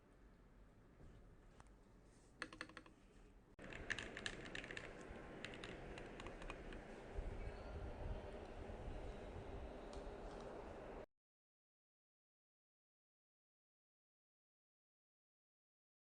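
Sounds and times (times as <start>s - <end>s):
mechanical keyboard key clacks: 3.6s - 6.8s.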